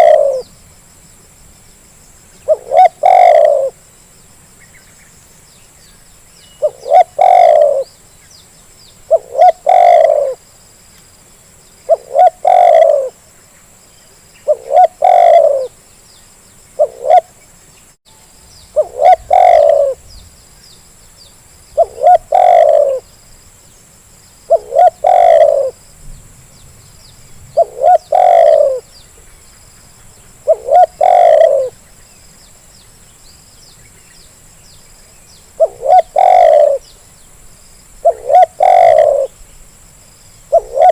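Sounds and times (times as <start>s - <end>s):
dove cooing: 0.0s - 0.5s, 2.4s - 3.8s, 6.6s - 8.0s, 9.1s - 10.4s, 11.9s - 13.2s, 14.4s - 15.8s, 16.8s - 17.4s, 18.8s - 20.1s, 21.8s - 23.1s, 24.5s - 25.8s, 27.6s - 28.9s, 30.4s - 31.8s, 35.6s - 36.9s, 38.0s - 39.4s, 40.5s - 40.9s
small birds chirping: 0.0s - 0.6s, 2.3s - 40.9s.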